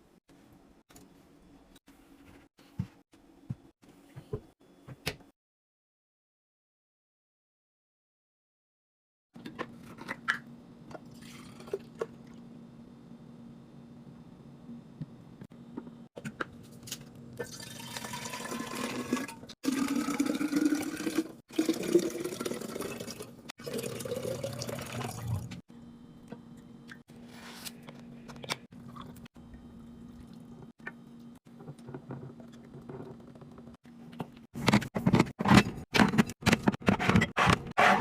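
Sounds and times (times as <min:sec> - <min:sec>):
liquid pouring into container: 0:17.4 - 0:25.6.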